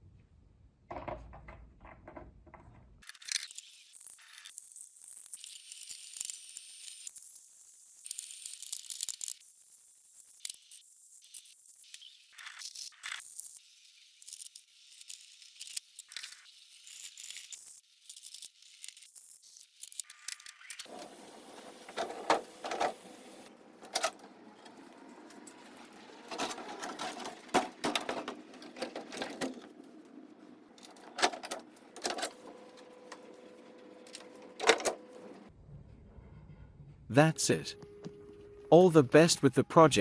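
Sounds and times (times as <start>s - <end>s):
plastic parts clicking and knocking: 0.9s - 3.7s, 26.3s - 30.0s, 30.7s - 32.4s.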